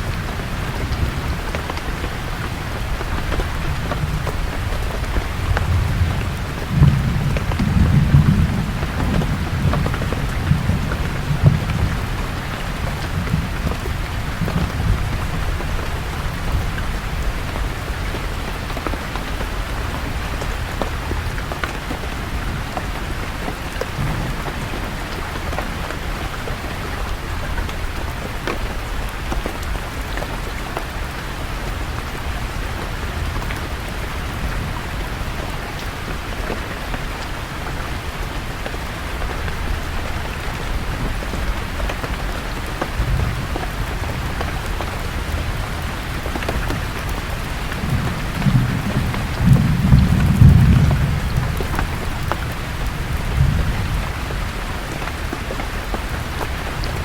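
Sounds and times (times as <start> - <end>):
distant thunder rumble: 0.0 - 29.4, 39.3 - 57.0
raindrops ticking close by: 0.0 - 57.0
steady rain falling: 0.0 - 57.0.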